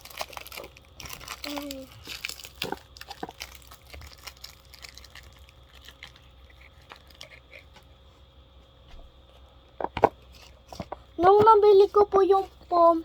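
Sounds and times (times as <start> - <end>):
package wrapping crinkling: 0.0 - 7.7.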